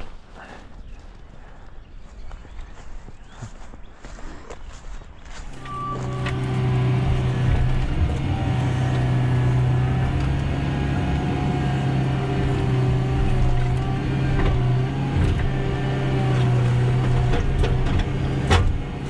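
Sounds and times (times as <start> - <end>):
excavator diesel engine running: 5.5 - 19.0
brief beep: 5.6 - 6.3.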